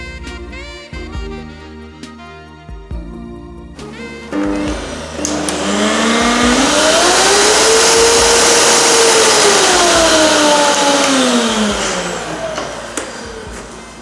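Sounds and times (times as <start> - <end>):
vacuum cleaner running: 3.8 - 14.0.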